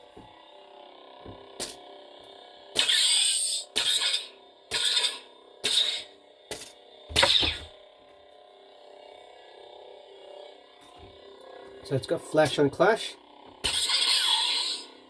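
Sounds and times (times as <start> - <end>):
lightsaber hum: 0.0 - 15.0
sharp lightsaber effect bursts: 2.8 - 6.1.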